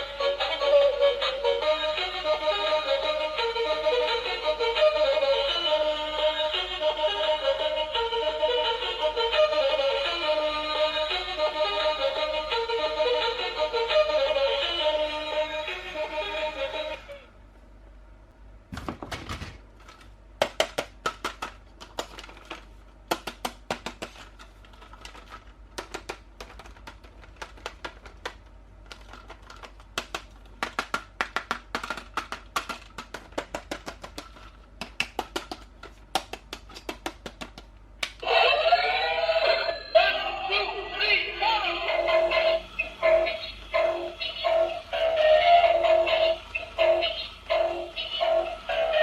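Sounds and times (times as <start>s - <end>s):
toy electronic tune with singing: 0.0s - 17.2s, 38.2s - 49.0s
toy packaging clicking and crackling: 19.8s - 37.6s.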